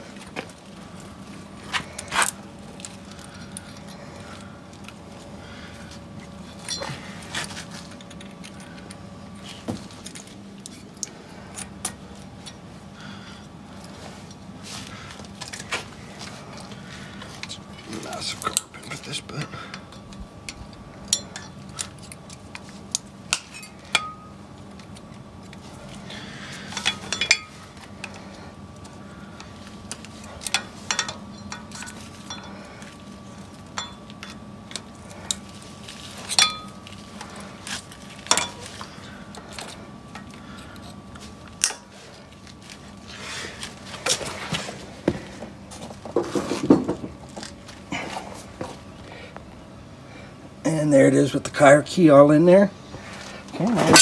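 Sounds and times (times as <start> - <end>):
metal parts and tools clinking: 6.5 - 8.9, 19.7 - 24.3, 26.6 - 28.2, 29.9 - 32.6, 36.2 - 41.0, 53.6 - 54.0.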